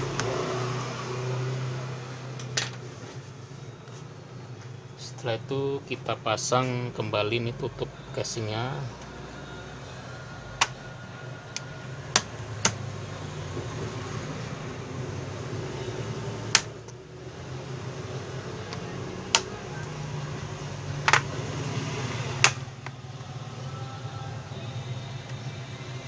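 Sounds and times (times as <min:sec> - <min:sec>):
plastic clips snapping into place: 0:10.6 - 0:10.9, 0:11.6 - 0:12.8, 0:16.5 - 0:17.0, 0:18.7 - 0:20.0, 0:21.0 - 0:21.4.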